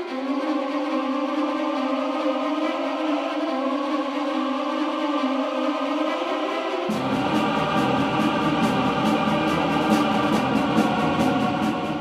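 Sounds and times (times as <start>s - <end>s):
choir-like chord: 0.0s - 12.0s
steady beat: 6.9s - 12.0s.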